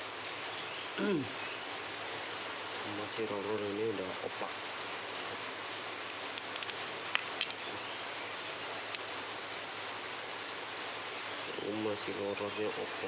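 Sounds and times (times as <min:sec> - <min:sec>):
steady background hiss: 0:00.0 - 0:13.0
light metallic clinks: 0:03.0 - 0:03.8, 0:06.1 - 0:07.7.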